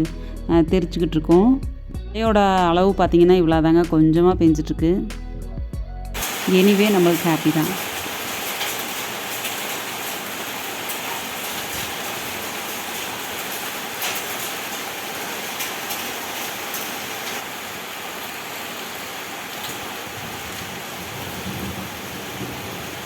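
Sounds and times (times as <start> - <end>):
hailstones ticking: 6.2 - 23.0
rain and hail on a roof: 6.2 - 23.0.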